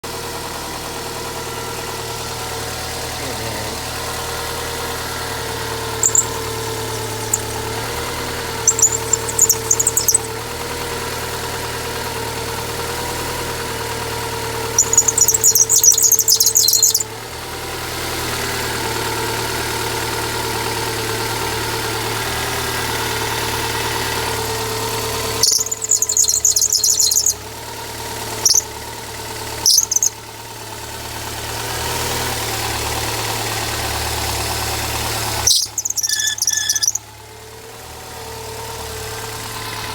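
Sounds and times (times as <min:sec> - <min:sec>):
car engine idling: 0:00.1 - 0:39.9
high chirping squeal: 0:05.7 - 0:10.4, 0:14.8 - 0:17.1, 0:25.2 - 0:27.4, 0:28.4 - 0:28.7, 0:29.6 - 0:30.2, 0:35.4 - 0:37.1.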